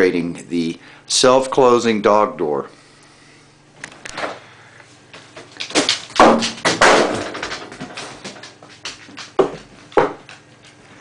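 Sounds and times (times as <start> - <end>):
dog door banging shut: 5.8 - 8.0.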